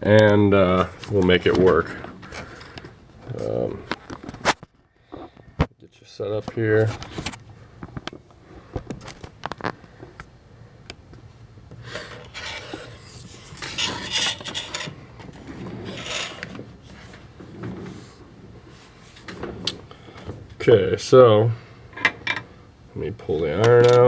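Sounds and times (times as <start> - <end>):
rubbing and scraping on work surface: 12.0 - 19.7.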